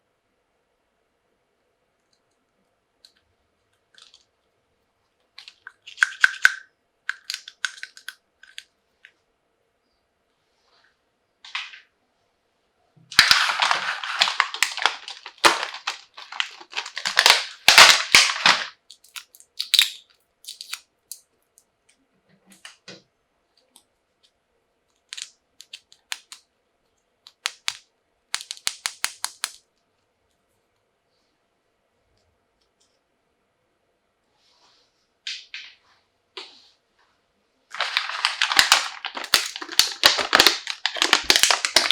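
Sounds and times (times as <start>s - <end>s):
plastic packaging crinkling: 5.4s - 8.6s, 13.1s - 20.8s, 25.1s - 26.4s, 28.4s - 29.6s, 37.7s - 41.9s
plastic pieces clicking: 5.4s - 8.7s, 13.1s - 21.2s, 24.9s - 26.4s, 27.3s - 29.6s, 37.7s - 41.9s.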